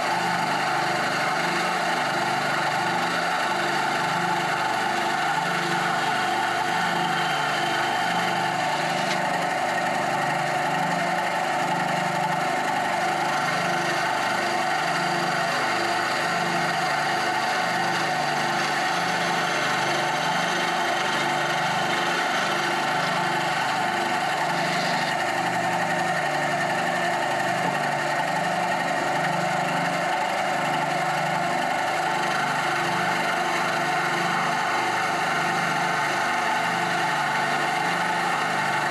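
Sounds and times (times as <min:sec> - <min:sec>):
bandsaw cutting wood: 0:00.0 - 0:38.9.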